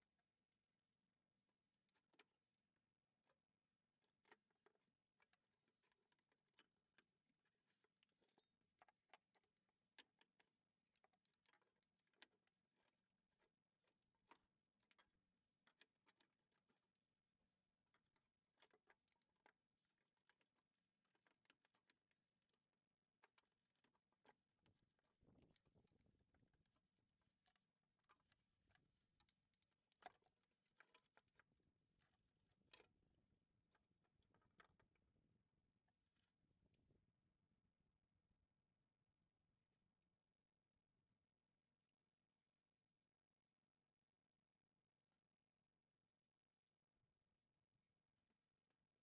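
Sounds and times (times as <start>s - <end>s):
small clicks and taps of hand work: 0.0s - 37.1s.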